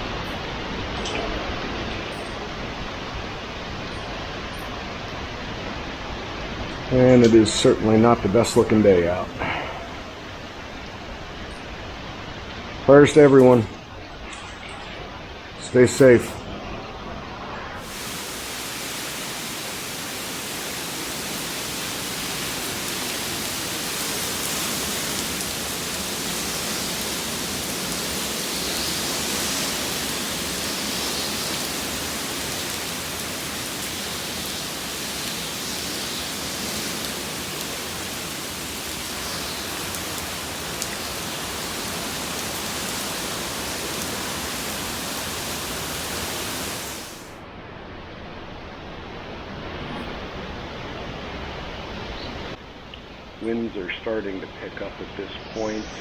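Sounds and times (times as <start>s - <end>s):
heavy rain: 0.0s - 13.1s, 16.6s - 47.5s
strong wind: 16.4s - 53.4s.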